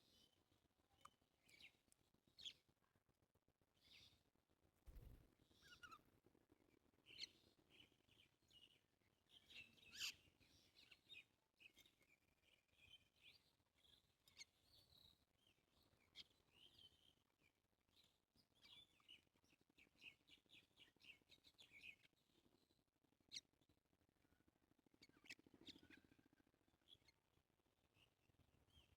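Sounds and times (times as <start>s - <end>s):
small songbirds chirping: 0.0s - 2.8s, 3.6s - 28.9s.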